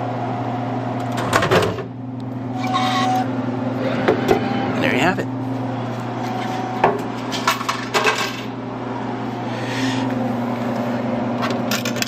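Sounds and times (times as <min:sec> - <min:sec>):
vending machine hum: 0:00.0 - 0:12.0.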